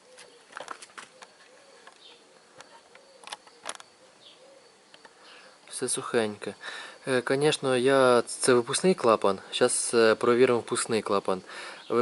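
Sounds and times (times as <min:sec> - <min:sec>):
faint sharp clicks: 0:04.9 - 0:05.8.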